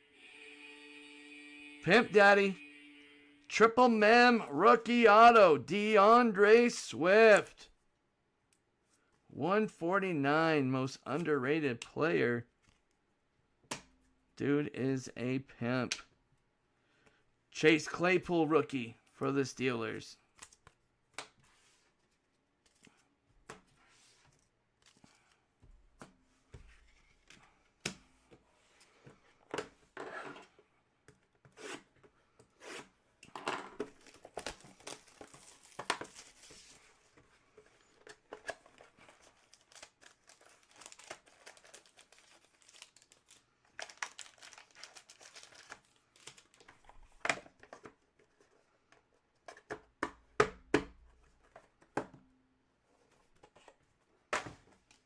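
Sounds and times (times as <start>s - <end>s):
wrappers tearing and crinkling: 34.0s - 36.6s, 39.2s - 46.7s.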